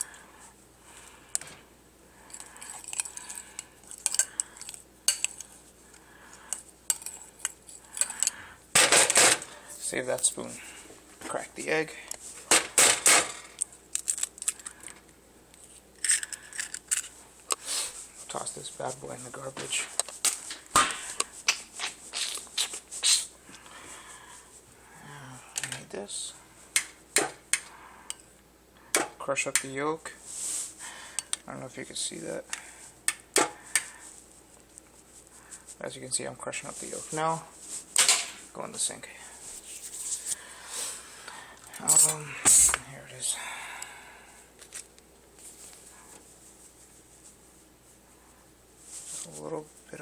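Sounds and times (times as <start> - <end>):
metal spoon clinking on a dish: 2.4 - 5.5, 6.9 - 8.4
rustling: 30.2 - 30.9, 36.6 - 41.1, 44.6 - 50.0.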